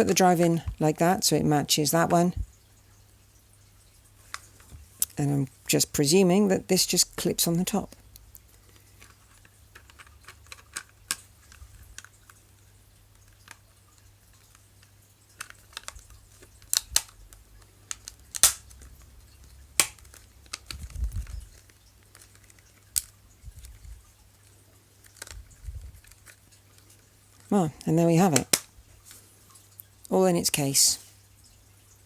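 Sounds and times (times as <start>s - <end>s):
plastic clicks and taps: 14.4s - 18.9s, 19.8s - 23.8s, 28.3s - 28.7s.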